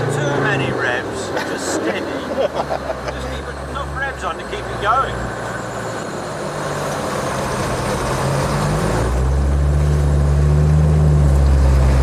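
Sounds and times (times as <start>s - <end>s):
diesel engine running under load: 0.0s - 12.0s
vehicle driving through water: 0.0s - 12.0s.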